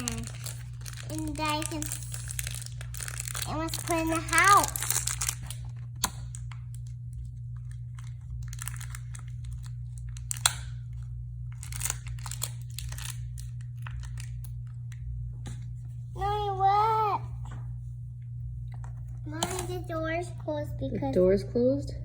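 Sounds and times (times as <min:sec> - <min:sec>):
packaging crinkling: 0:00.0 - 0:15.0
steady low hum: 0:00.0 - 0:22.0.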